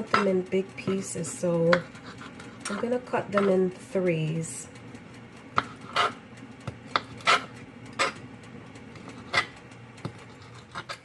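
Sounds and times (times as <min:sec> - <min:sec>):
knife cutting on cutting board: 0:05.6 - 0:06.2, 0:07.0 - 0:08.2, 0:09.0 - 0:09.5.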